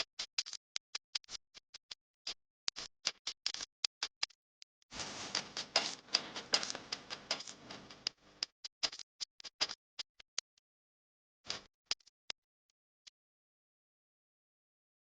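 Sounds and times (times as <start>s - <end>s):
hot oil crackling in a pan: 5.0s - 8.1s.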